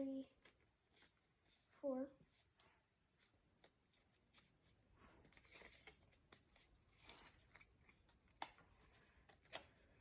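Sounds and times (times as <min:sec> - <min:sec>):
trading cards rustling: 0:03.1 - 0:10.0.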